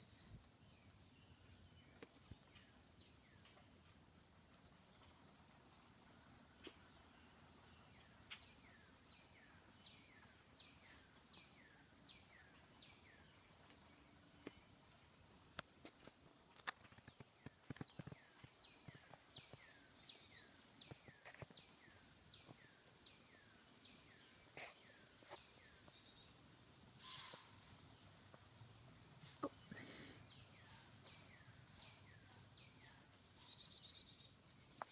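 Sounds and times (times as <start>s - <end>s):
insects droning: 0.0s - 34.9s
bird chirping: 16.8s - 26.4s, 29.3s - 34.9s.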